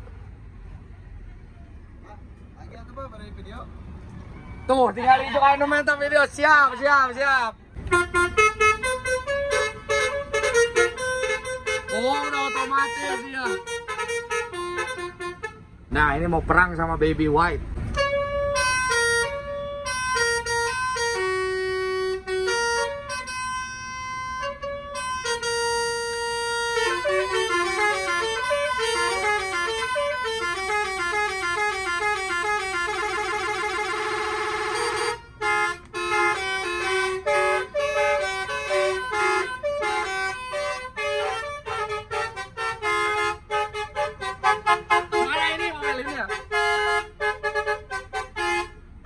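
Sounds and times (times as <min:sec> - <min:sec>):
musical horn melody: 0:07.8 - 0:15.6, 0:17.9 - 0:48.8.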